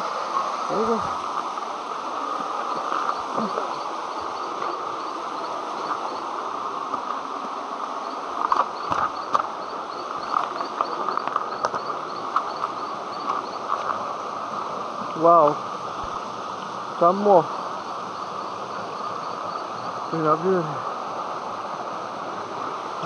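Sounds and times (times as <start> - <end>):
waterfall rushing: 0.0 - 23.0
high chirping: 2.7 - 6.3, 8.0 - 13.8.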